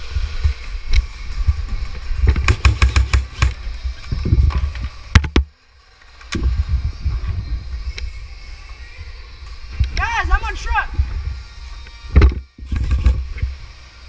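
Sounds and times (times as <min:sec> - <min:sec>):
wind rumble on microphone: 0:00.0 - 0:05.4, 0:06.3 - 0:14.0
sharp clicks: 0:02.3 - 0:03.6.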